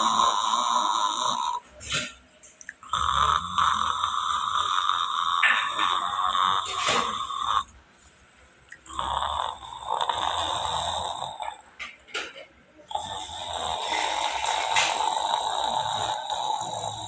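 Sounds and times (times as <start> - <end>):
cat snoring: 0.0 - 1.9, 2.8 - 7.7, 8.9 - 11.6, 12.9 - 17.0.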